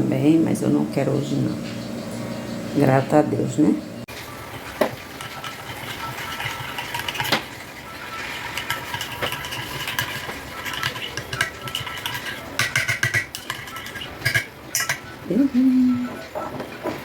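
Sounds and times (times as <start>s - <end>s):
cutlery clinking against dishes: 8.0s - 15.2s.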